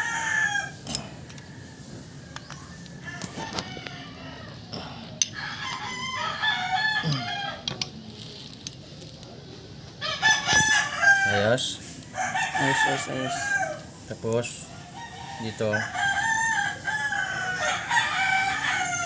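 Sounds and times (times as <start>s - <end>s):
rooster crowing: 0.0s - 2.1s, 5.3s - 7.7s, 10.0s - 13.9s, 14.6s - 19.0s.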